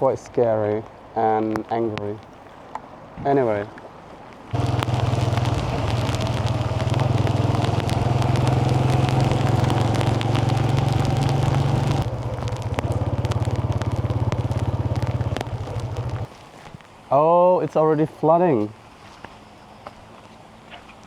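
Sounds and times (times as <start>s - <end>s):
light clicks and crackles: 4.5s - 17.0s
small engine running: 4.6s - 16.3s.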